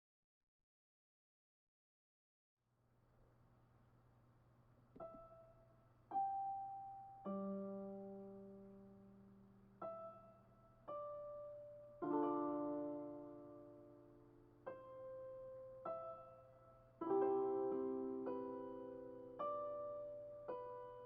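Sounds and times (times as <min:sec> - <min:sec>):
faint steady hum: 0:02.7 - 0:21.0
solo piano: 0:05.0 - 0:21.0.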